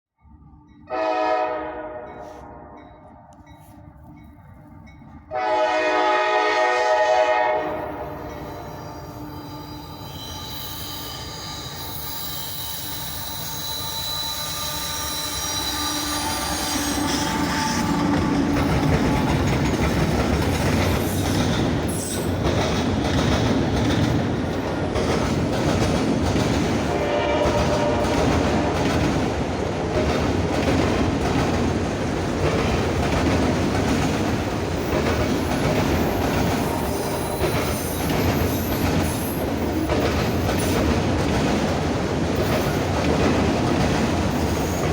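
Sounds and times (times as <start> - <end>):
freight train passing: 0.2 - 44.9
train horn: 0.9 - 3.7, 5.3 - 12.0, 13.6 - 19.3, 26.9 - 28.8, 36.0 - 37.9
wheel squeal: 9.3 - 18.1
rail clatter: 13.0 - 44.9.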